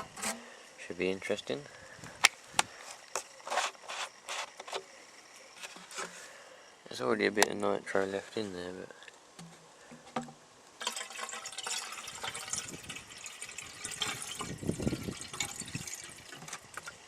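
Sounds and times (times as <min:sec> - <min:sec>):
fuel pouring into tank: 0:10.8 - 0:17.0.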